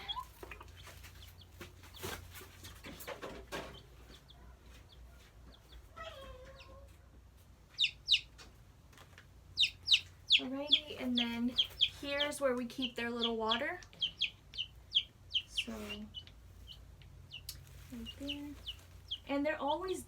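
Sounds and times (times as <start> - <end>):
baby chicks peeping: 0.0 - 20.0
rustling and handling noise: 0.2 - 5.6, 17.5 - 19.0.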